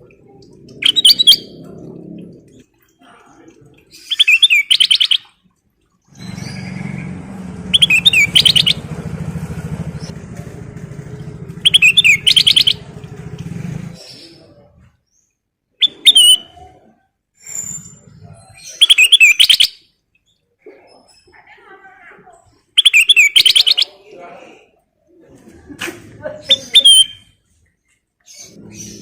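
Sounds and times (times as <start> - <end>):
low steady motor drone: 6.2 - 14.0
bulbul chattering whistled calls: 7.7 - 8.8, 11.6 - 12.8.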